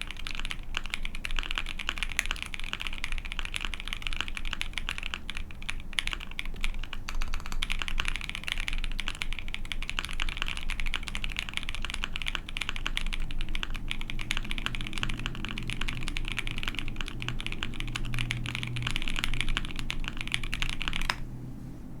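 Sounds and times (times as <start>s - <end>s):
fast typing on mechanical keyboard: 0.0s - 21.2s.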